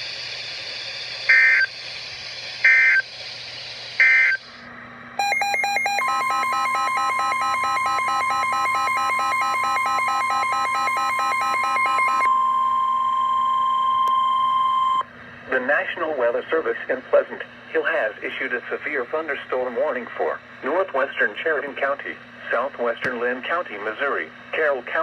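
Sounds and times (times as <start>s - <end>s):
rapidly pulsing electronic alert: 1.2s - 1.9s, 2.6s - 4.5s, 5.2s - 12.3s
steady warning alarm tone: 1.3s - 1.8s, 2.6s - 3.1s, 4.0s - 4.5s, 5.2s - 15.0s.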